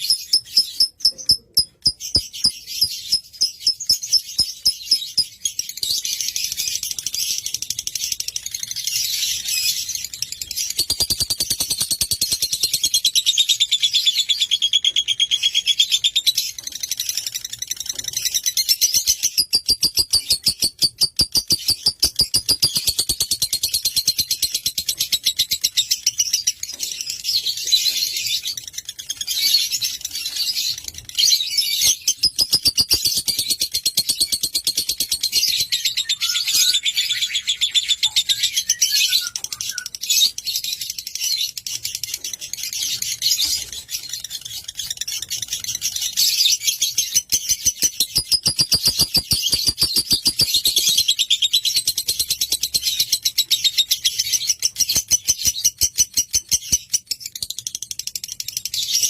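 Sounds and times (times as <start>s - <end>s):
lovebird chattering: 0.0s - 5.4s, 47.0s - 51.6s
lower bird chirps: 0.0s - 7.6s, 8.8s - 57.4s.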